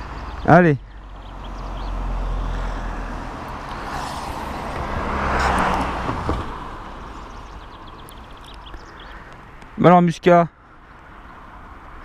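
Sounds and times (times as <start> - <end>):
vehicle passing by: 0.0 - 9.2.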